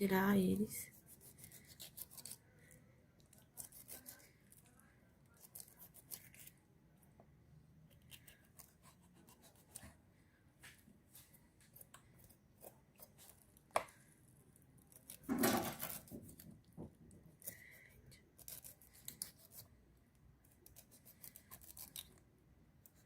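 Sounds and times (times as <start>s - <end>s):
knife cutting pineapple: 0.4s - 2.5s, 3.3s - 6.5s, 7.9s - 10.0s, 14.8s - 16.6s, 17.4s - 19.7s, 20.6s - 22.2s.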